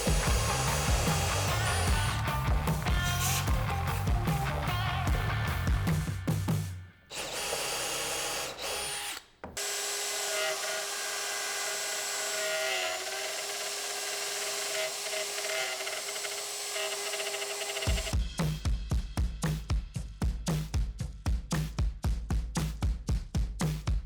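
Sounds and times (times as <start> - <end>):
power tool motor whine: 0.0 - 2.2, 2.9 - 3.6, 7.1 - 18.2.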